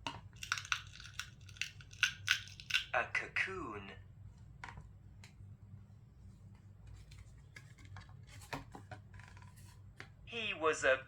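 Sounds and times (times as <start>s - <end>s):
faint clicks and taps: 4.4s - 5.4s, 6.5s - 10.2s.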